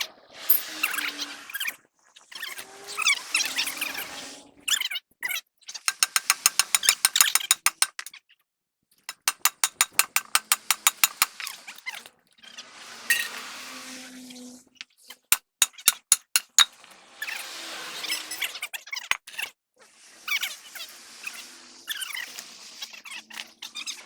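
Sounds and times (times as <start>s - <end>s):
rapid mechanical clicking: 5.9s - 8.1s, 9.1s - 11.3s, 15.4s - 16.7s.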